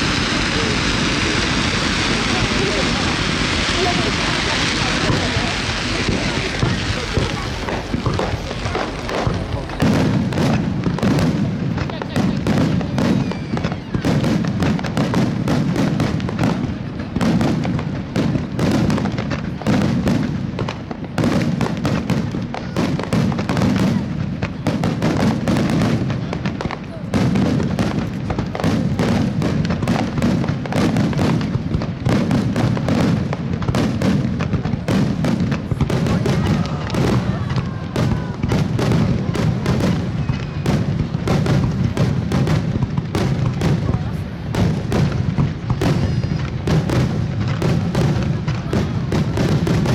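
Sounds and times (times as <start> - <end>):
fireworks bursts and booms: 0.0 - 49.9
low rumble of explosions: 0.0 - 49.9.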